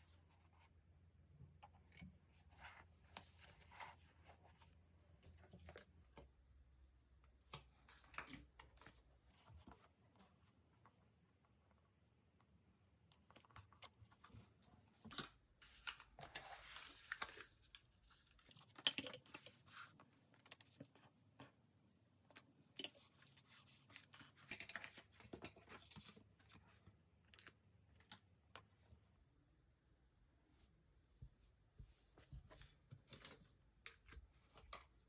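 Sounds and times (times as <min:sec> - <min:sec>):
paper crinkling and handling: 0:13.3 - 0:21.0, 0:22.8 - 0:28.3.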